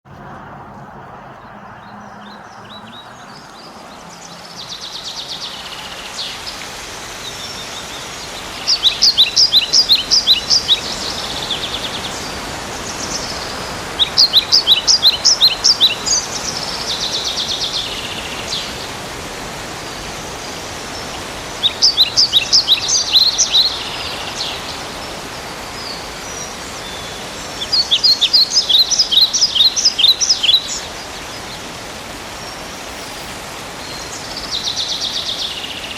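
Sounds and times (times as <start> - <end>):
steady rushing hiss: 3.2 - 35.9
songbird singing high notes: 32.2 - 35.9
buzzy bird trills: 32.4 - 34.4.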